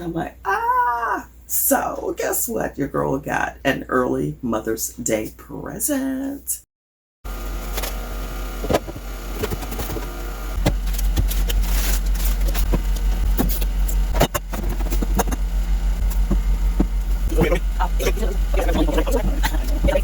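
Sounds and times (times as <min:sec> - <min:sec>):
low machine hum: 0:07.3 - 0:20.0
scattered clicks and knocks: 0:12.2 - 0:17.3.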